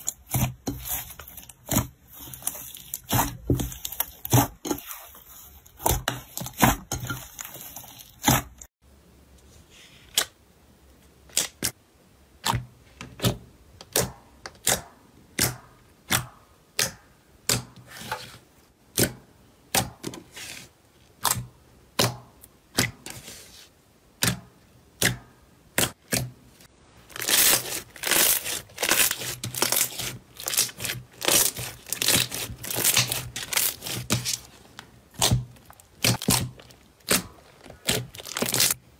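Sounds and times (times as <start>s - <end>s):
slime crackling and popping: 27.1s - 38.8s.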